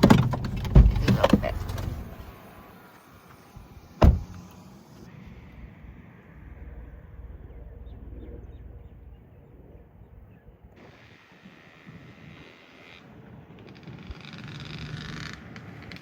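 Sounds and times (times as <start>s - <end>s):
car door shutting: 0.0s - 2.6s, 3.2s - 4.6s
low steady rumble: 5.1s - 10.8s.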